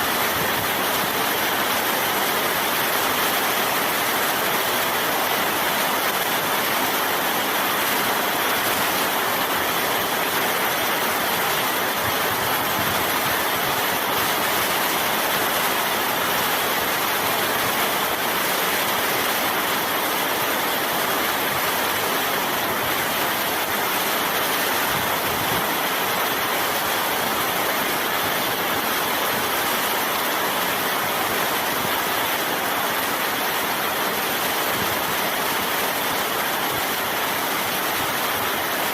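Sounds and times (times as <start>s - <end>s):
steady rain: 0.0s - 38.9s.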